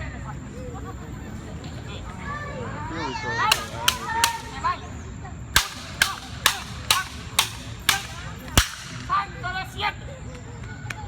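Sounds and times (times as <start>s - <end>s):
sharp cracks: 3.5s - 4.7s, 5.6s - 9.2s.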